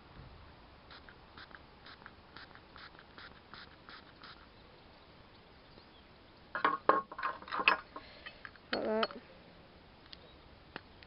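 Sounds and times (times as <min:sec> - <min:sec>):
spray bottle spritzes: 0:00.9 - 0:04.5.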